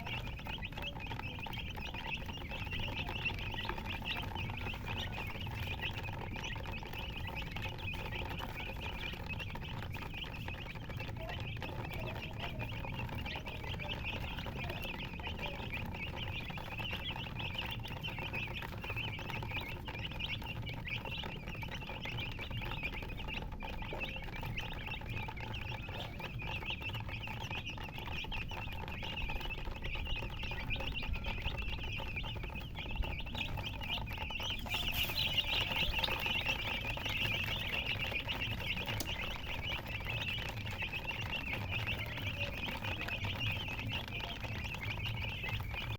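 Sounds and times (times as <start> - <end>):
baby chicks peeping: 0.0 - 45.9.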